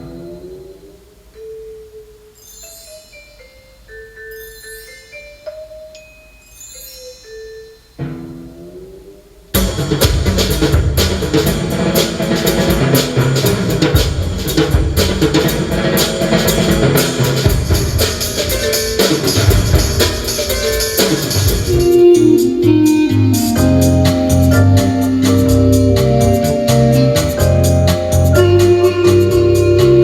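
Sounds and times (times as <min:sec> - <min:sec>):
music with drums on car stereo: 0:09.5 - 0:30.0
held organ-like keyboard chords: 0:18.4 - 0:30.0.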